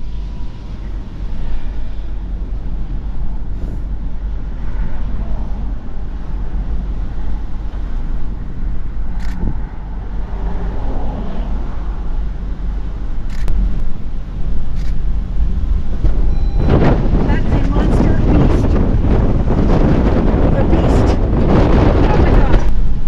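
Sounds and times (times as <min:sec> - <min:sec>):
road and engine rumble: 0:00.0 - 0:23.0.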